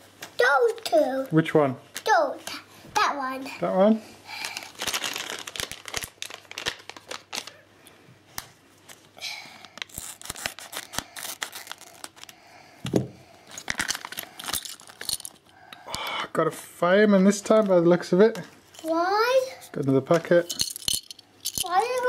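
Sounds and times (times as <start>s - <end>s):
plastic packet tearing and crinkling: 4.3s - 7.6s, 9.6s - 12.4s, 13.5s - 15.3s.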